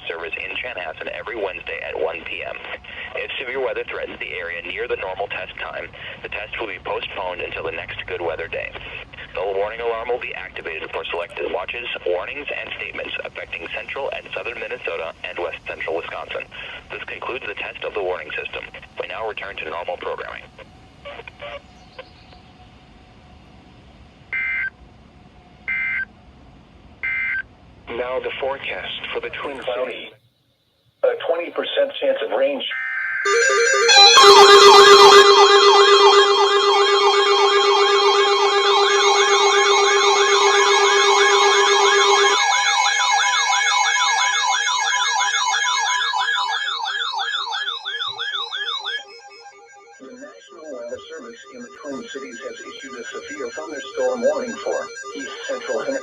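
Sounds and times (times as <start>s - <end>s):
faint radio hiss: 0.0s - 22.2s, 27.8s - 32.7s, 50.0s - 56.0s
electronic yelp siren: 32.4s - 56.0s
digital data tone bursts: 32.7s - 56.0s.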